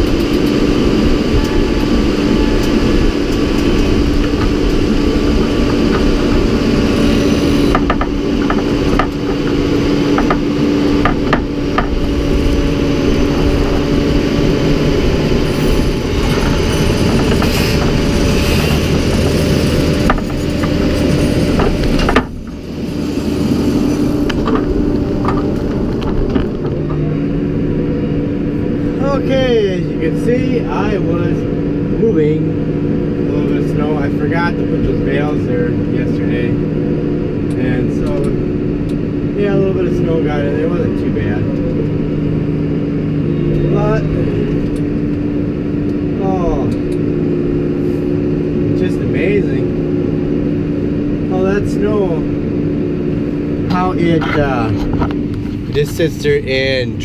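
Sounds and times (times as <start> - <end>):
tractor engine running: 0.0 - 57.0
knocks and clunks: 7.5 - 12.4, 16.1 - 22.8, 23.8 - 27.2.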